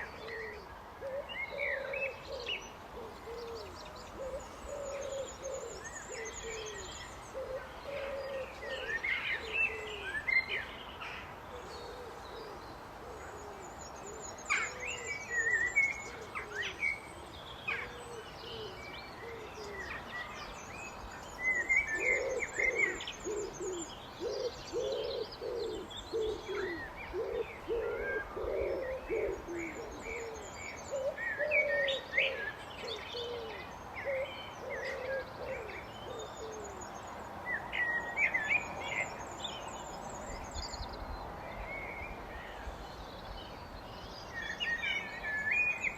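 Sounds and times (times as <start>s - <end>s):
bird cooing: 0.0s - 10.8s, 11.5s - 20.5s, 21.3s - 37.0s
blackbird singing: 0.0s - 11.0s, 11.6s - 45.9s
small birds twittering: 0.0s - 45.9s.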